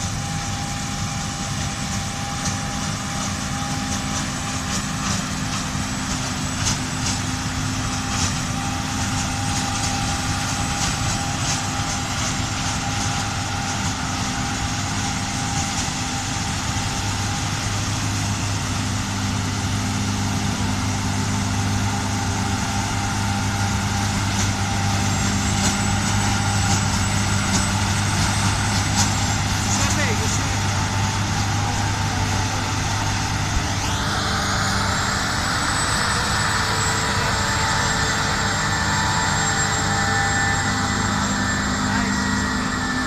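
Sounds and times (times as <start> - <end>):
combine harvester droning: 0.0 - 43.0
faint high whine: 18.4 - 43.0.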